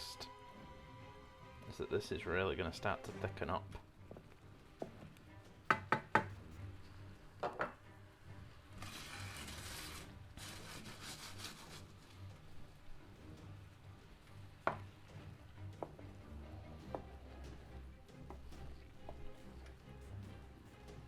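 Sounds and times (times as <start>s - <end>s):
spoon knocking against pan: 5.7s - 6.3s
spoon scraping a pan: 8.8s - 11.9s.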